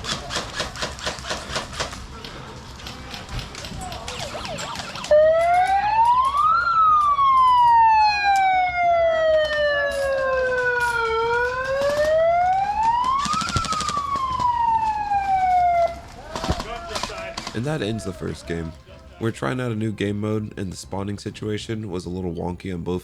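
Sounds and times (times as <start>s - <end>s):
siren winding up and down: 4.0s - 16.0s.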